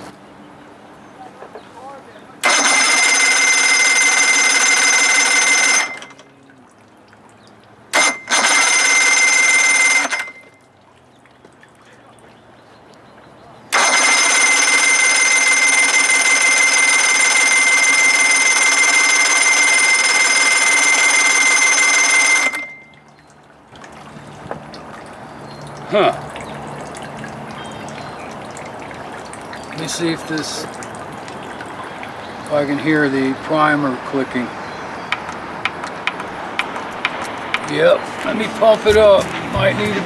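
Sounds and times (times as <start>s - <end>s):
electric starter cranking engine: 2.4s - 6.3s, 7.9s - 10.5s, 13.7s - 22.8s.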